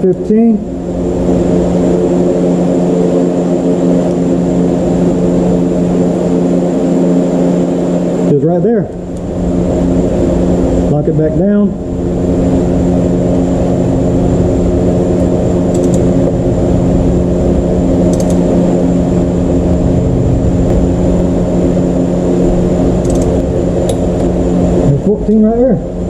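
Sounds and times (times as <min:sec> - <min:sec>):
loud mechanical hum: 0:00.0 - 0:26.0.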